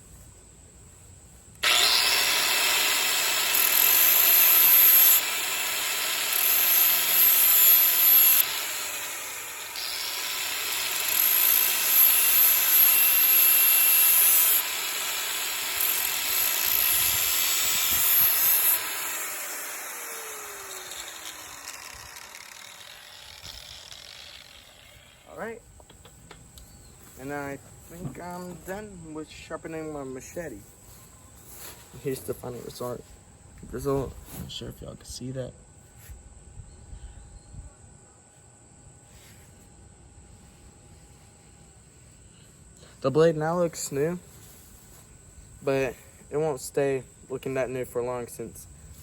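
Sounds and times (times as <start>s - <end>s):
blade grinding hiss: 1.6s - 25.4s
power sander running: 1.6s - 25.5s.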